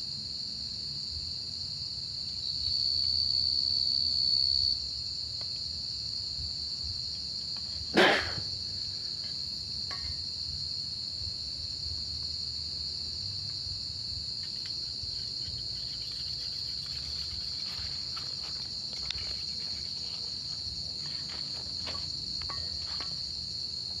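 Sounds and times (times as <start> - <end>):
crickets trilling: 0.0 - 24.0
faint clicks and rustles: 14.4 - 23.2.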